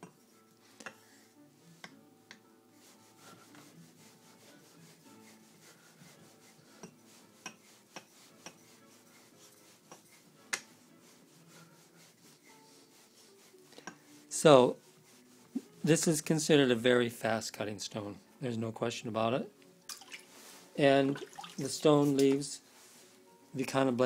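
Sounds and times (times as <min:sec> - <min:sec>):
plane blade rubbing on whetstone: 0:02.8 - 0:16.1.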